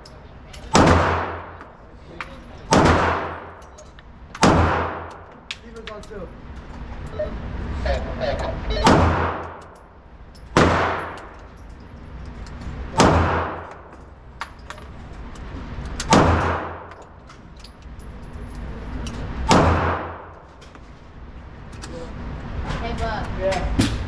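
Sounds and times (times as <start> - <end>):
gunshots echoing: 0.7 - 1.8, 2.7 - 3.6, 4.4 - 5.3, 8.8 - 9.8, 10.5 - 11.4, 12.9 - 13.9, 16.1 - 17.0, 19.4 - 20.5.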